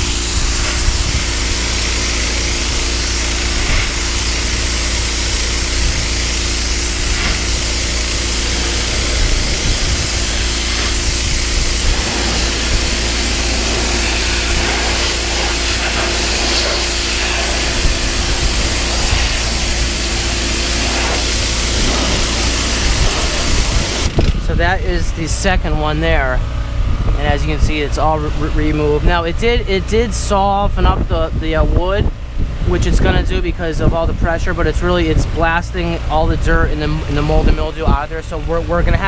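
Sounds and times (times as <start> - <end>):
pressure washer spray on wood: 0.0 - 24.4
pressure washer hum: 0.0 - 39.0.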